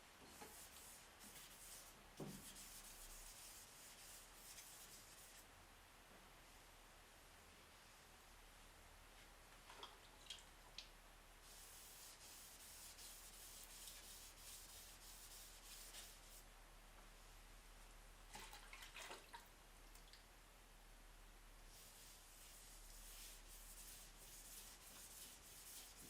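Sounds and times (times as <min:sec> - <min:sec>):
sanding scrapes: 0:00.4 - 0:05.4, 0:11.5 - 0:16.4, 0:21.7 - 0:26.0
sanding block rubbing: 0:11.5 - 0:16.4, 0:21.8 - 0:26.0.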